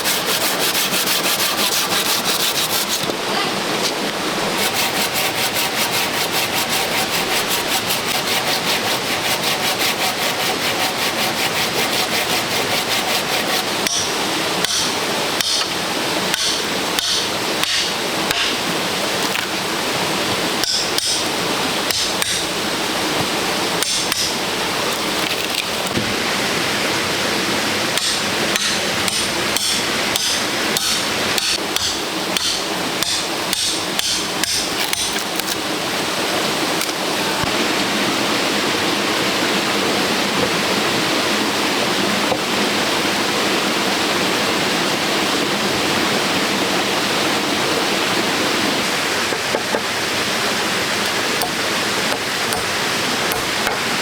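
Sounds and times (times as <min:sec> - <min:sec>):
sharp knocks: 0:13.8 - 0:18.6, 0:28.0 - 0:35.2.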